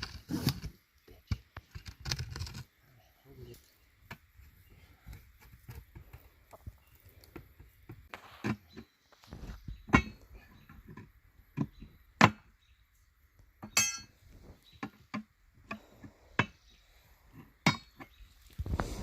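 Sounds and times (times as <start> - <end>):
metal tools clanking: 13.7 - 14.2.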